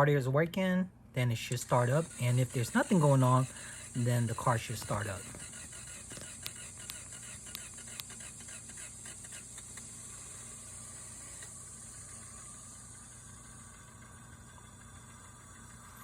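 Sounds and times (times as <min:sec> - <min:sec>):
sharp clicks: 0:04.4 - 0:09.9.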